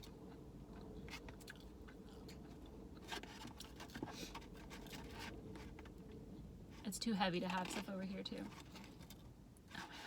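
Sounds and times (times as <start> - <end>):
chewing food: 0.0 - 5.2.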